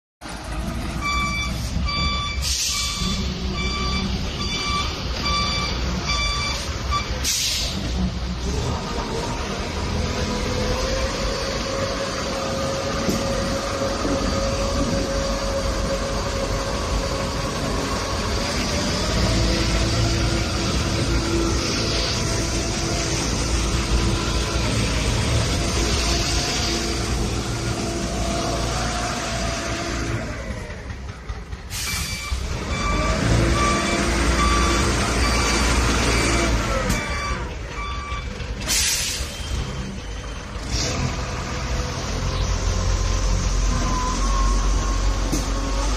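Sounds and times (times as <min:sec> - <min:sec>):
diesel engine running under load: 0:00.2 - 0:45.9
reversing alarm beeping: 0:01.0 - 0:07.3, 0:31.8 - 0:40.6, 0:42.6 - 0:45.3.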